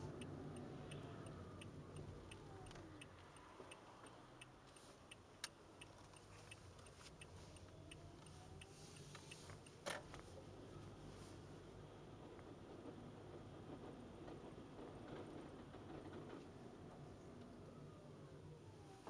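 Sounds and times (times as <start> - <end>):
faint regular ticking: 0.0 - 9.8.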